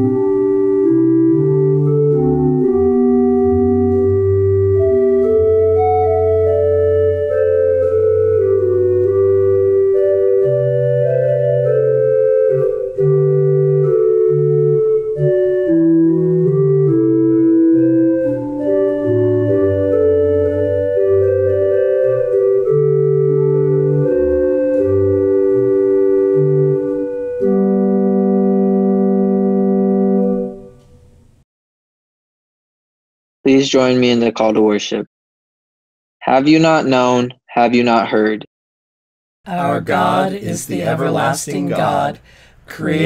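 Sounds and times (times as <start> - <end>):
organ playing slow chords: 0.0 - 31.4.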